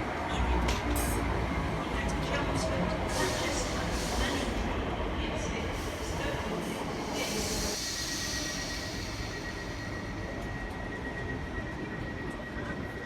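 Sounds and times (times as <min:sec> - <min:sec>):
high-pitched train whine: 0:00.0 - 0:13.0
train hiss: 0:02.9 - 0:11.3.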